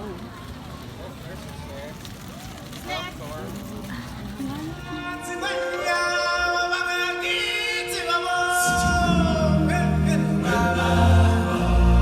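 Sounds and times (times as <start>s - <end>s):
choir singing in harmony: 5.0s - 12.0s
deep bass notes: 8.6s - 12.0s.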